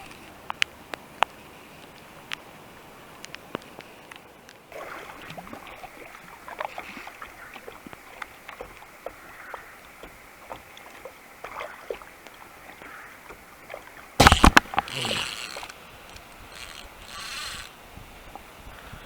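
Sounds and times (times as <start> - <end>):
paddle splashing in water: 4.7 - 15.4.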